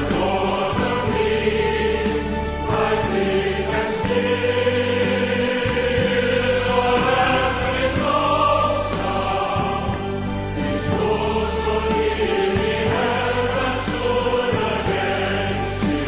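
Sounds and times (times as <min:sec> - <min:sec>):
choir singing held chords: 0:00.0 - 0:16.0.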